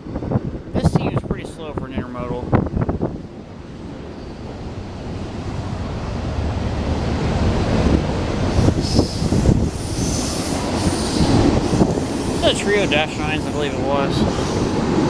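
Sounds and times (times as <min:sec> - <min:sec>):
freight train rumbling past: 0:00.0 - 0:15.0
train wheel squeals and clicks: 0:08.6 - 0:15.0.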